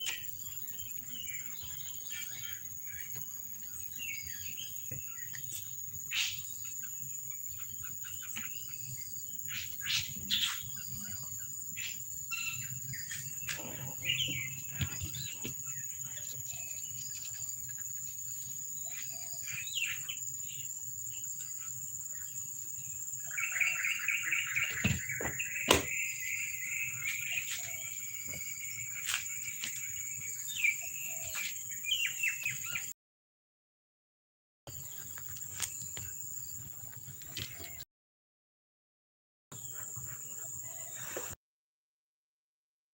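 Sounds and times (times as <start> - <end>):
bird chirps: 7.6 - 17.6, 23.2 - 32.9.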